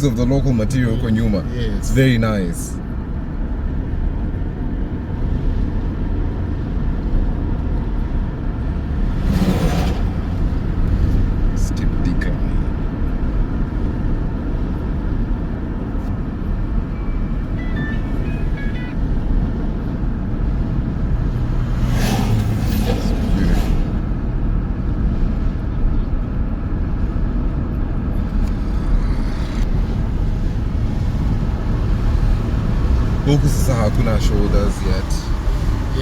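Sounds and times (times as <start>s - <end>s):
car road and engine noise: 0.0s - 36.0s
high beeps: 16.9s - 19.0s.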